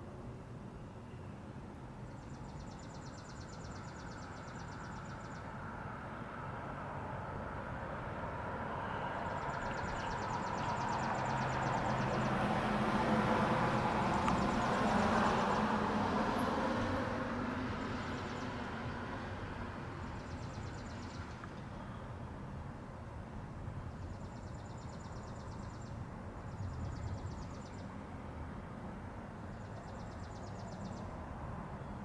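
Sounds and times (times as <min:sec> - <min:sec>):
vehicle passing by: 0:09.0 - 0:20.2.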